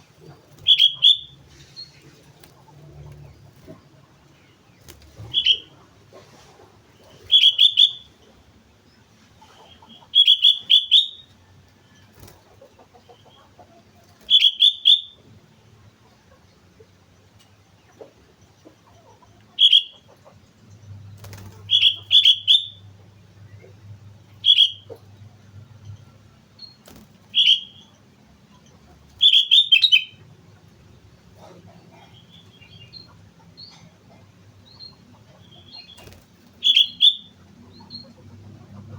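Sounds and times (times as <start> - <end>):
bulbul singing whistled notes: 10.2 - 11.3, 21.8 - 22.8, 29.2 - 30.2, 35.5 - 38.0.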